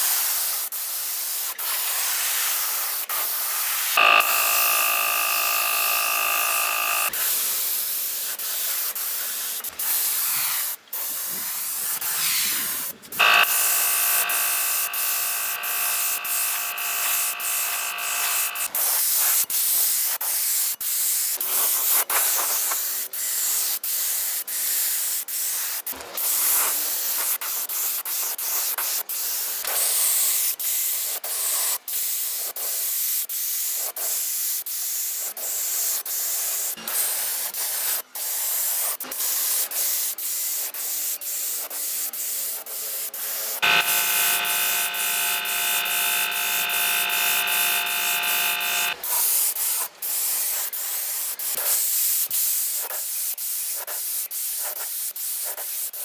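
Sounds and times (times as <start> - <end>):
machine whine: 4.0 - 7.1, 13.2 - 18.8, 43.6 - 49.0.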